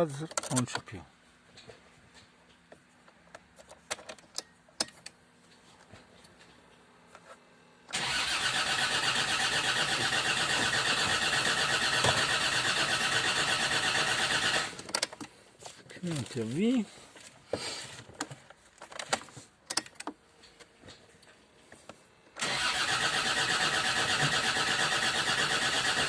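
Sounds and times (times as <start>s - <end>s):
starter motor cranking engine: 7.9s - 14.9s, 22.4s - 26.0s.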